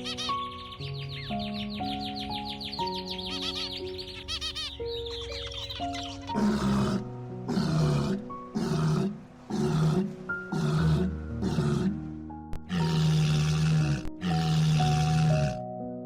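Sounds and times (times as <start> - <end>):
background music: 0.0 - 16.0
animal low calls: 6.3 - 15.6.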